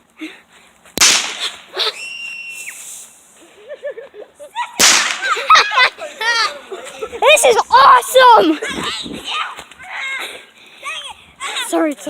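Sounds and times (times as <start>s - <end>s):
firework bangs: 1.0s - 1.9s, 4.8s - 5.7s.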